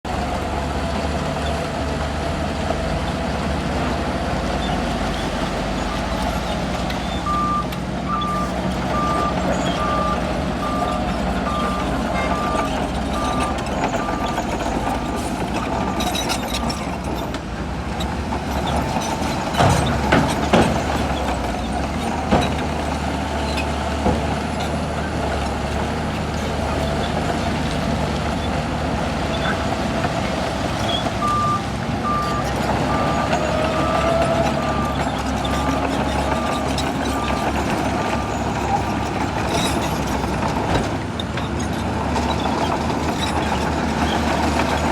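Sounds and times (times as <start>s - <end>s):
bulldozer diesel engine running: 0.0s - 44.9s
reversing alarm beeping: 7.0s - 14.5s, 30.8s - 38.6s.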